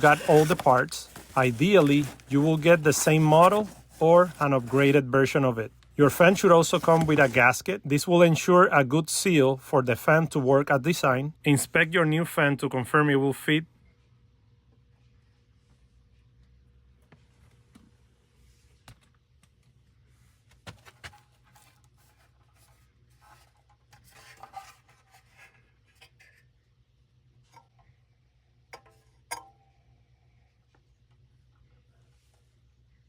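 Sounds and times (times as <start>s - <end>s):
rustling: 0.0s - 7.6s.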